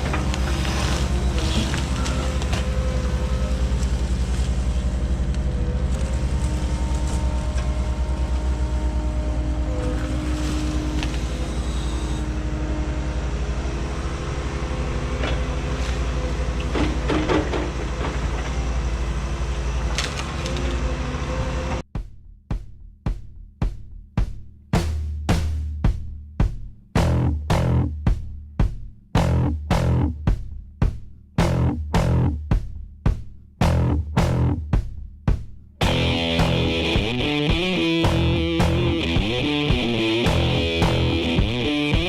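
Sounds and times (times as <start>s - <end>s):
excavator diesel engine running: 0.0s - 21.8s, 31.4s - 32.4s, 33.6s - 34.6s, 35.8s - 42.0s
whine shifting in pitch: 1.1s - 15.2s, 31.4s - 32.4s, 33.6s - 34.6s, 35.8s - 42.0s
knocks and clatters: 16.6s - 18.6s.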